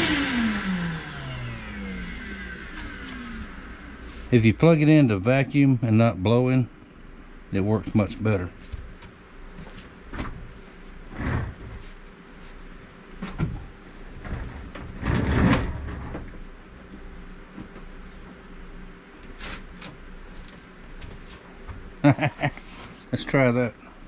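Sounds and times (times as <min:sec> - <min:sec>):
faint steady hum: 0:00.0 - 0:24.0
knocks and scrapes: 0:08.6 - 0:13.6, 0:14.2 - 0:16.3.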